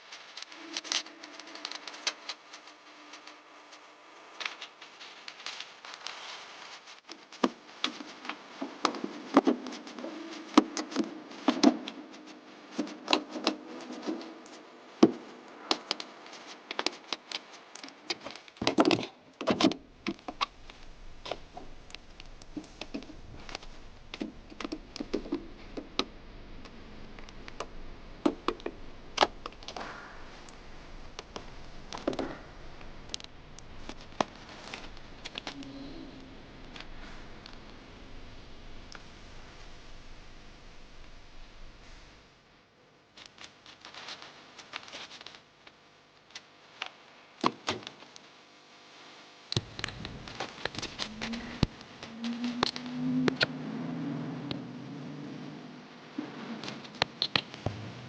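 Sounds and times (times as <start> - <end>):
faint low hum: 19.0 - 43.0, 49.4 - 58.0.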